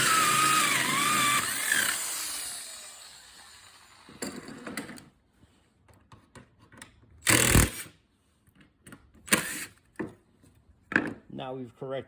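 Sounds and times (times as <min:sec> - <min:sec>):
power drill cutting wood: 0:00.0 - 0:04.2, 0:09.3 - 0:09.7.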